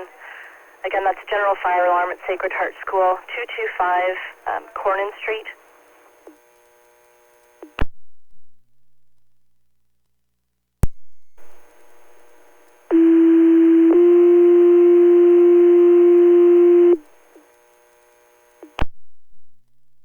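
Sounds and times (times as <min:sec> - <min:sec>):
radio squelch: 0:00.0 - 0:06.4
radio hiss: 0:00.0 - 0:07.8, 0:11.4 - 0:13.3
two-tone pager tone: 0:12.9 - 0:17.0
radio click: 0:18.6 - 0:18.9.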